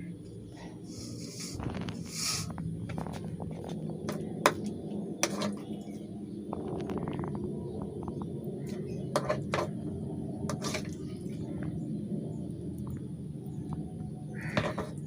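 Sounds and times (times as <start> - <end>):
steady low hum: 0.0 - 15.0
short hiss: 0.9 - 2.5.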